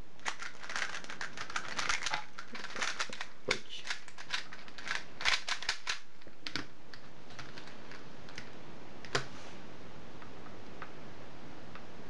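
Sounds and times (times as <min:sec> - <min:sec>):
puzzle cube plastic clicking: 0:00.2 - 0:08.5.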